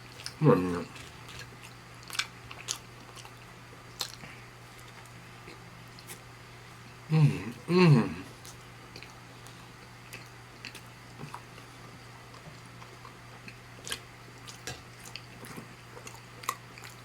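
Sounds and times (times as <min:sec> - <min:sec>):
close chewing: 0:00.0 - 0:17.0
steady low hum: 0:00.0 - 0:17.0.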